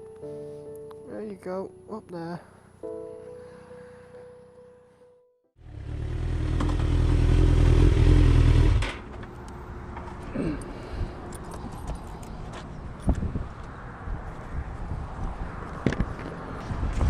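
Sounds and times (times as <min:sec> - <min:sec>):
motorcycle engine running: 0:05.6 - 0:08.9.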